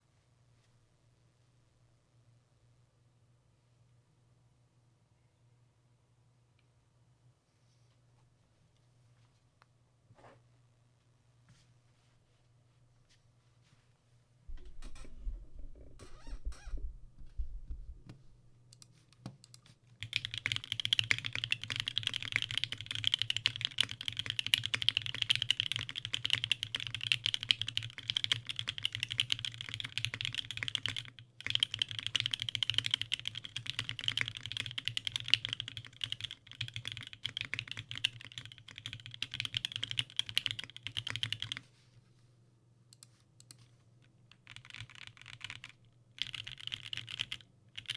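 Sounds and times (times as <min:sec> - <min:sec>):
faint low hum: 0:00.0 - 0:20.8
fast typing on keyboard: 0:19.4 - 0:41.6, 0:44.3 - 0:47.9.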